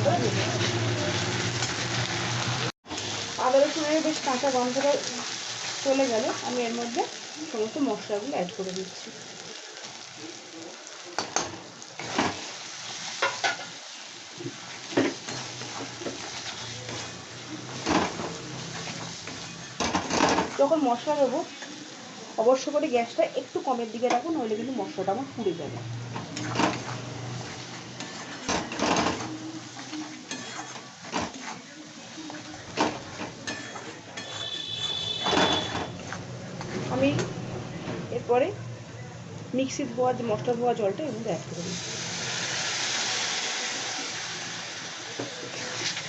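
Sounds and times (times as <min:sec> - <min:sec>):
onions sizzling in oil: 0:00.0 - 0:37.4, 0:39.3 - 0:46.0
spatula scraping a pan: 0:26.4 - 0:31.7, 0:33.2 - 0:36.9.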